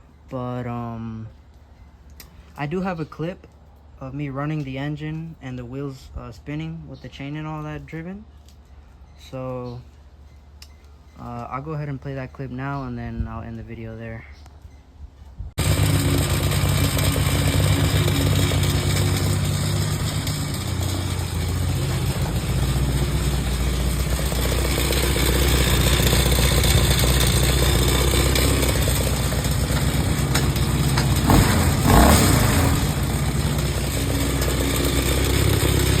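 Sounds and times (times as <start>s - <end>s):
go-kart engine running: 15.6s - 36.0s.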